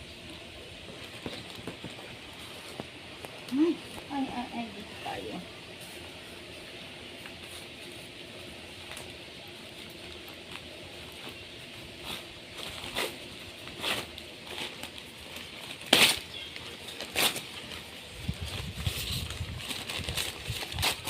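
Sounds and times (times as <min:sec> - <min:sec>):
wrapping rustling and crinkling: 0:00.1 - 0:21.0
sharp crackles: 0:08.7 - 0:21.0.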